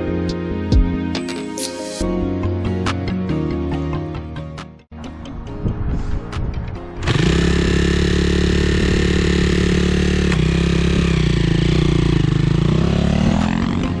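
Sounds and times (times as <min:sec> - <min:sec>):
motorcycle engine running loudly: 0:07.0 - 0:14.0.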